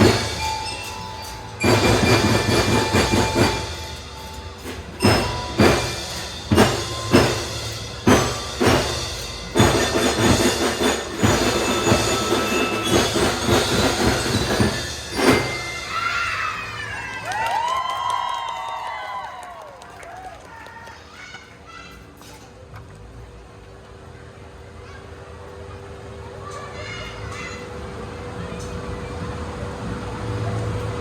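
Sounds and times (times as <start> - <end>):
ringing metallic notes: 0.0 - 16.9
drum band playing: 0.0 - 17.3
voices shouting and cheering: 15.6 - 22.2.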